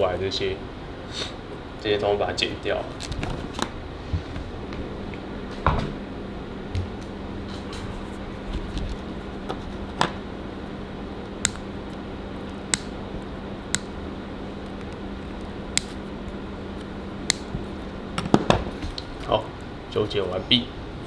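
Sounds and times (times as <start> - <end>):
low steady hum: 0.0 - 21.0
wire cutters snipping: 11.3 - 20.4.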